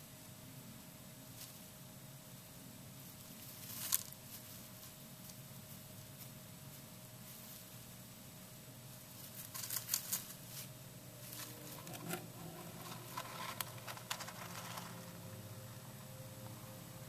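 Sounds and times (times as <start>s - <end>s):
steady low hum: 0.0s - 17.0s
hamster crinkling and scratching: 3.3s - 7.8s, 9.1s - 15.5s.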